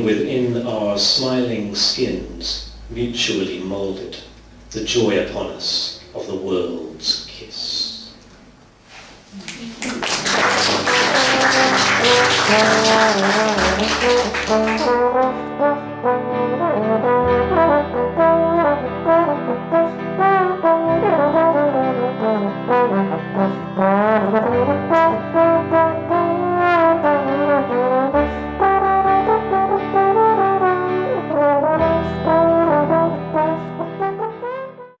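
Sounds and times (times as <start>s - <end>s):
instrumental music: 10.0s - 35.0s.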